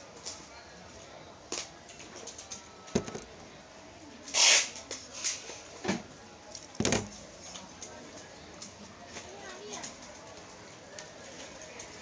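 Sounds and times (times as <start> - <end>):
packaging clicks and knocks: 3.0 - 3.3.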